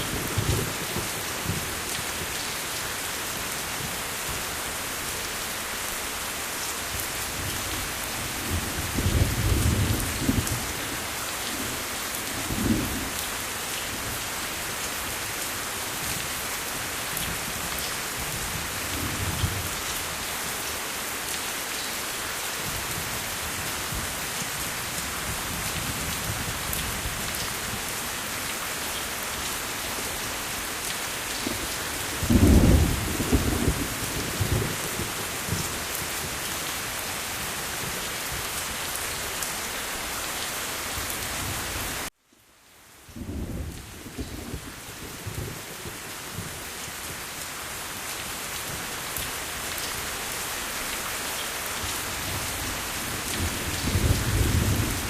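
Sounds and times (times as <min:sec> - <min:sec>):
steady rain: 0:00.0 - 0:55.0
thunder rumbling: 0:31.5 - 0:35.7.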